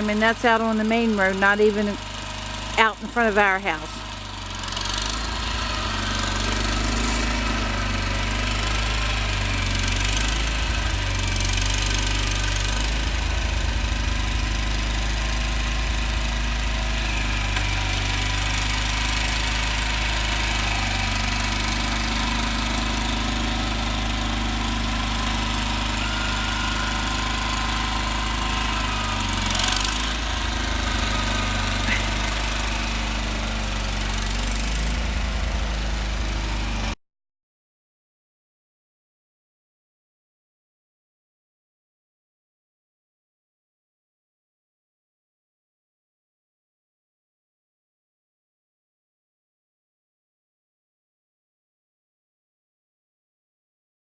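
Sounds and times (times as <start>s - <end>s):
garden tractor engine running: 0.0s - 37.0s.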